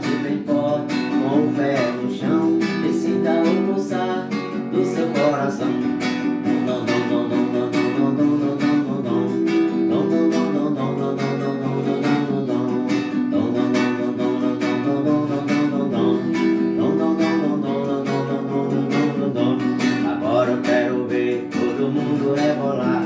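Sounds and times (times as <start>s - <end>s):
strummed guitar: 0.0s - 23.0s.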